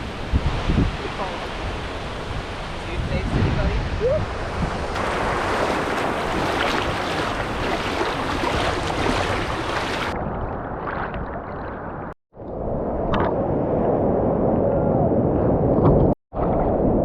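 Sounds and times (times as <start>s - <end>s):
ocean surf: 0.0s - 10.2s
wind: 0.0s - 17.0s.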